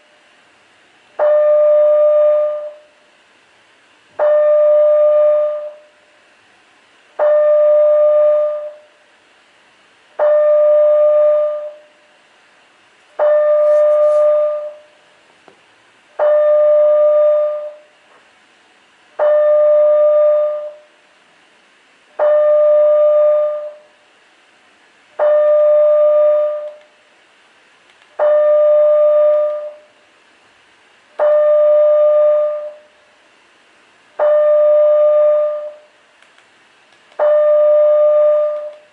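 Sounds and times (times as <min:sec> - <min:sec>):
fire alarm steady pitched tone: 0:01.2 - 0:03.0, 0:04.2 - 0:06.1, 0:07.2 - 0:09.0, 0:10.2 - 0:12.0, 0:13.2 - 0:15.0, 0:16.2 - 0:17.9, 0:19.2 - 0:21.0, 0:22.2 - 0:23.9, 0:25.2 - 0:26.8, 0:28.2 - 0:30.0, 0:31.2 - 0:33.0, 0:34.2 - 0:36.0, 0:37.2 - 0:38.9.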